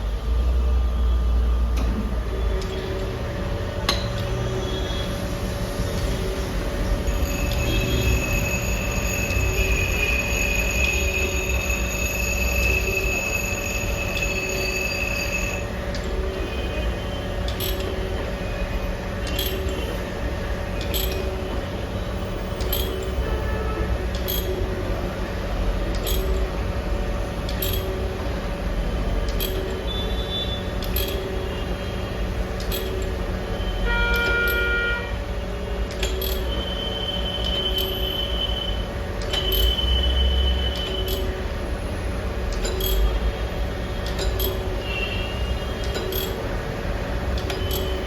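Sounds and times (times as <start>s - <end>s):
high steady whine: 0.0s - 48.0s.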